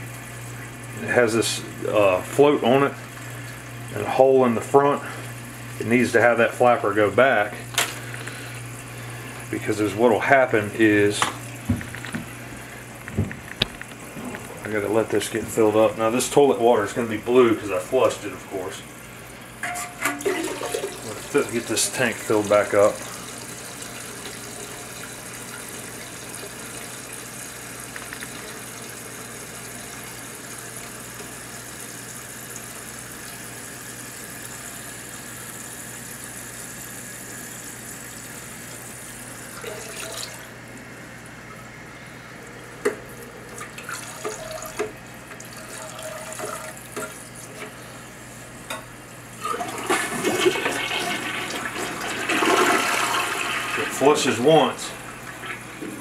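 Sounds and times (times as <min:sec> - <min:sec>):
toilet flushing: 0:00.0 - 0:12.9, 0:13.9 - 0:41.7, 0:42.3 - 0:56.0
toilet tank refilling hiss: 0:20.1 - 0:40.6, 0:49.4 - 0:56.0.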